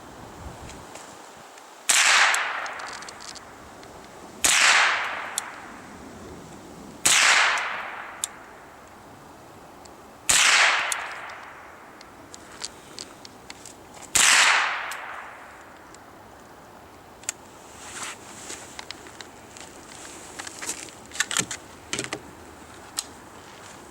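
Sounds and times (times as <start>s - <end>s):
rifle shots with echo: 1.9s - 3.0s, 4.4s - 5.6s, 7.0s - 8.2s, 10.3s - 11.8s, 14.1s - 15.6s.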